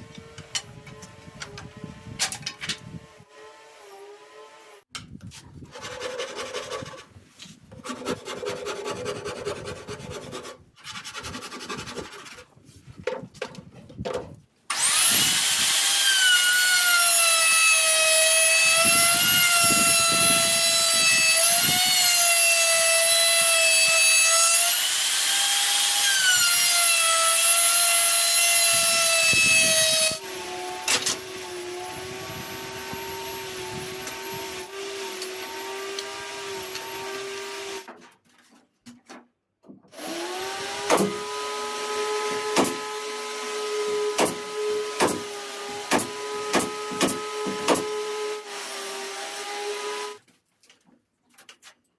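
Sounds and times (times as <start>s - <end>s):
power tool motor whining: 0.0s - 4.8s, 14.7s - 37.9s
hand scraping wood: 5.2s - 14.0s, 37.9s - 39.3s.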